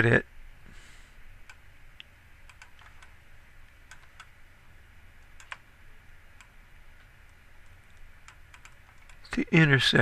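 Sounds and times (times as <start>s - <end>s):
low room hum: 0.0s - 10.0s
computer mouse clicks: 1.4s - 4.4s, 5.2s - 5.7s, 6.4s - 9.4s.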